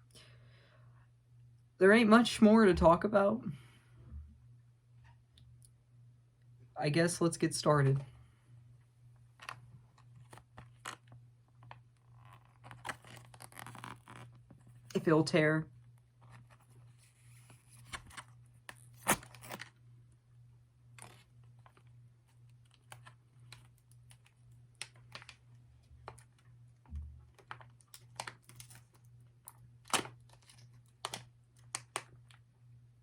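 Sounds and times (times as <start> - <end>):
low steady hum: 0.0 - 33.0
packet ripping: 12.0 - 14.4
snack packet crinkling: 29.9 - 32.4.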